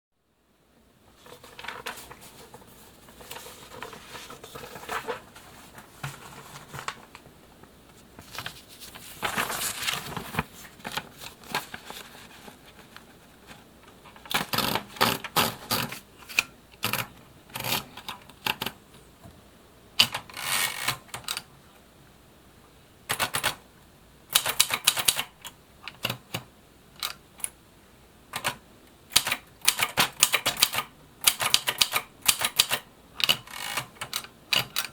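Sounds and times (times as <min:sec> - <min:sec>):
typewriter keys clacking: 0:23.1 - 0:23.6, 0:24.3 - 0:25.3, 0:28.4 - 0:34.9.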